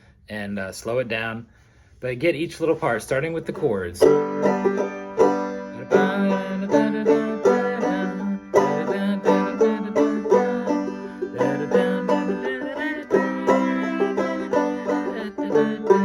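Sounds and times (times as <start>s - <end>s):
banjo plucked notes: 3.8s - 16.0s.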